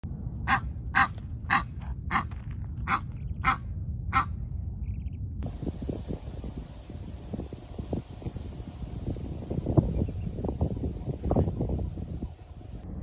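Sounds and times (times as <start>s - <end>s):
low steady rumble: 0.0s - 13.0s
steady hiss: 5.4s - 12.8s.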